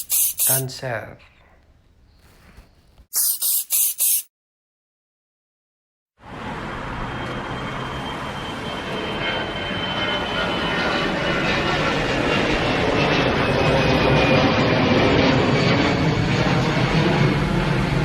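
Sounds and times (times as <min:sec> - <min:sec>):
vehicle rumble: 0:06.2 - 0:09.5.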